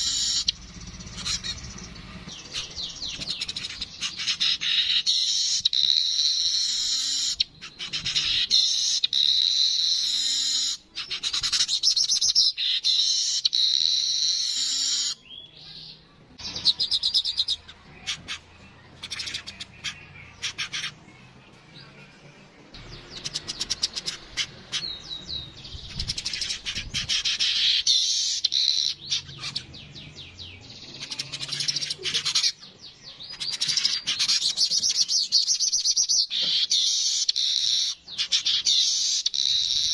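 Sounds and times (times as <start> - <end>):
rapid bird ticking notes: 0.0 - 15.2, 22.8 - 30.3
bird chattering: 0.0 - 22.1, 22.7 - 39.9.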